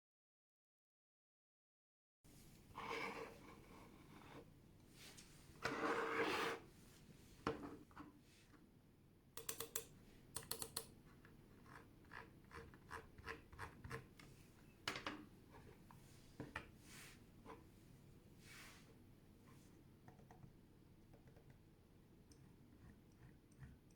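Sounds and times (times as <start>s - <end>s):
mouse sliding on desk: 2.8s - 6.7s
muffled mouse clicks: 9.4s - 10.9s.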